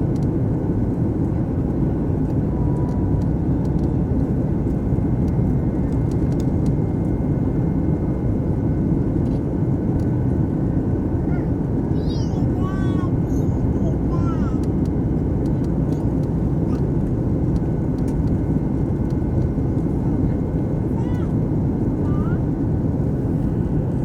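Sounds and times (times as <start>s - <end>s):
jet engines rumbling: 0.0s - 24.0s.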